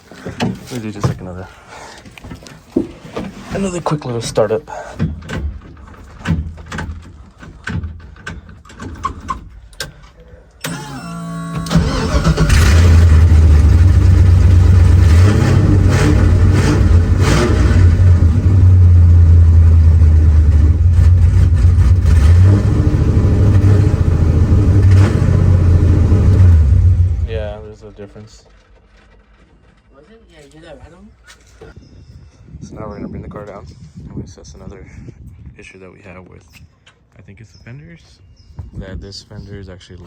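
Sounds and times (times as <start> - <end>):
car starter cranking: 5.0 - 29.9
rough engine idling: 11.7 - 30.1.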